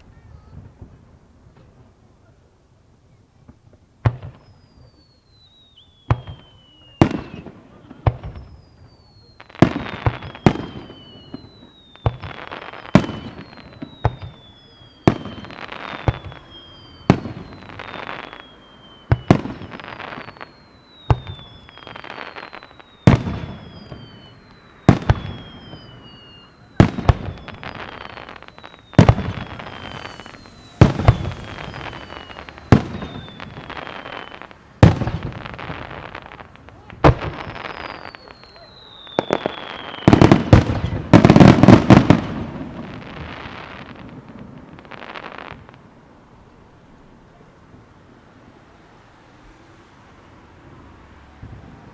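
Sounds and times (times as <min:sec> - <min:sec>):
falling whistle: 0:04.4 - 0:07.6, 0:08.2 - 0:36.5, 0:37.2 - 0:44.0
firework shells bursting: 0:09.6 - 0:45.8.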